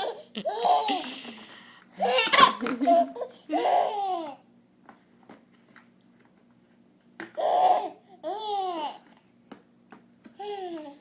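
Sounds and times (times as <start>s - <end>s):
baby squealing and laughing: 2.0s - 4.4s.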